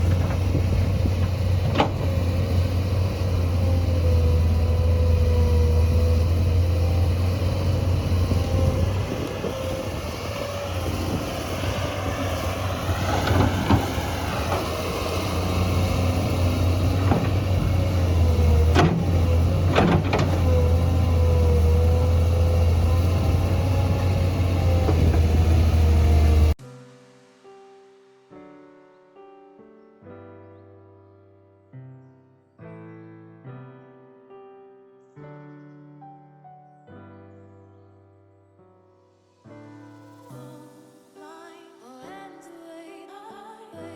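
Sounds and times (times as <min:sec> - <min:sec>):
digging machine engine running: 0:00.0 - 0:26.6.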